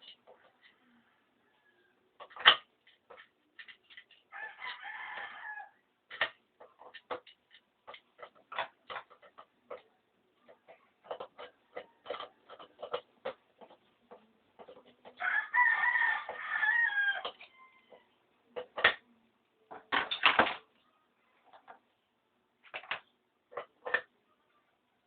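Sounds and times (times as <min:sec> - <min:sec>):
rooster crowing: 0:04.3 - 0:05.8, 0:15.2 - 0:18.1.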